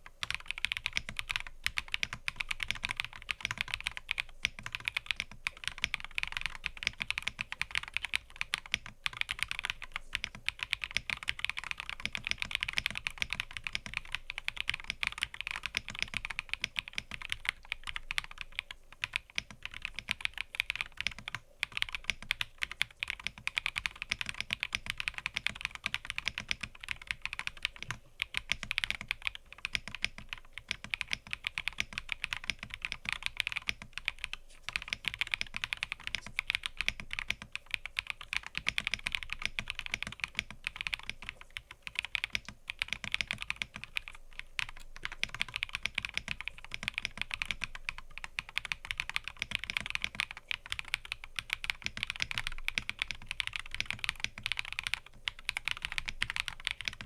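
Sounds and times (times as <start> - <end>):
mechanical keyboard typing: 0.0 - 57.0.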